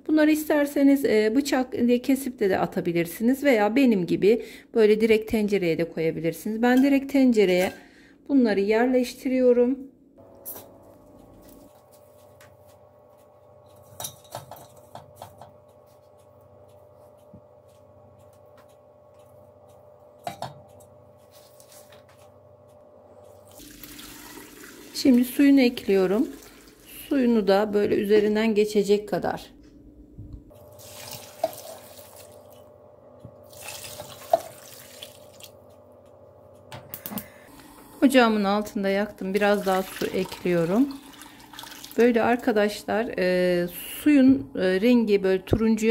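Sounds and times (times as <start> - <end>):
faint steady hum: 0.0 - 45.9
water pouring into pot: 23.5 - 26.9, 30.7 - 32.6, 33.5 - 35.5, 39.3 - 42.2.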